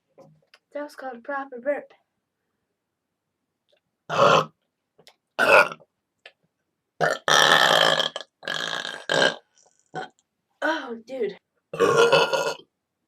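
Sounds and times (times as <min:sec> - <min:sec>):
girl burping: 0:05.4 - 0:05.8, 0:11.8 - 0:12.6.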